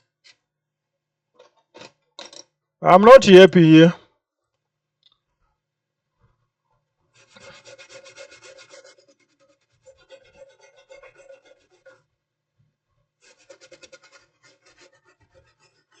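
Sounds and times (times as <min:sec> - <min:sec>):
faint rapid scrubbing: 0:07.2 - 0:12.1, 0:13.2 - 0:16.0.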